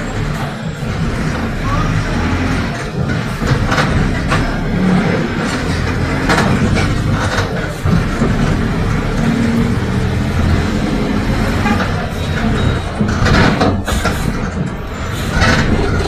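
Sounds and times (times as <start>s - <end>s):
bus diesel engine running: 0.0s - 16.0s
short knocks and rattles: 12.8s - 16.0s.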